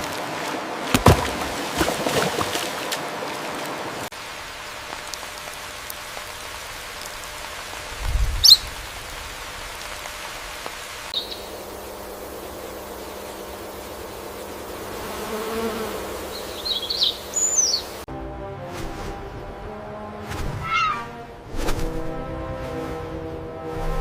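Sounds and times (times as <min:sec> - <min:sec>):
rain-like hiss: 0:00.0 - 0:18.1.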